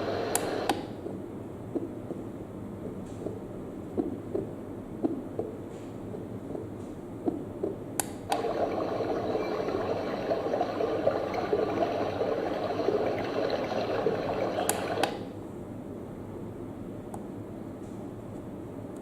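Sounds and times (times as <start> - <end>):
crackly running-water track: 8.3 - 15.2.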